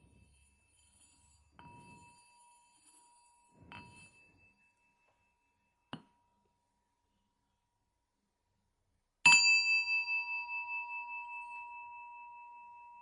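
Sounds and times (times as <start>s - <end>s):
small metal bell ringing: 0.0s - 6.5s, 9.3s - 13.0s.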